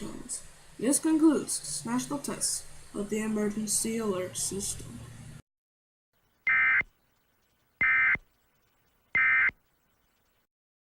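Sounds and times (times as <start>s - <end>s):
short digital data bursts: 6.4s - 10.5s.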